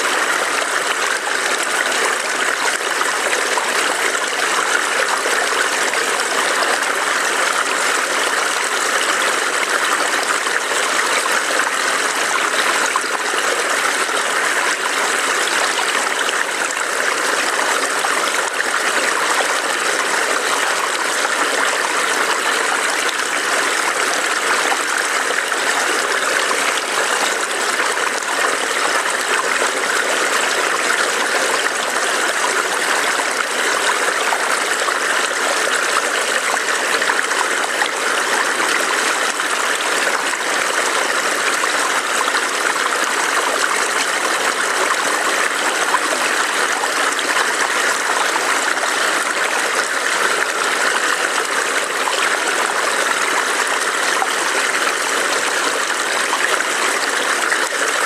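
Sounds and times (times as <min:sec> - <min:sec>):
stream trickling over rocks: 0:00.0 - 0:58.0.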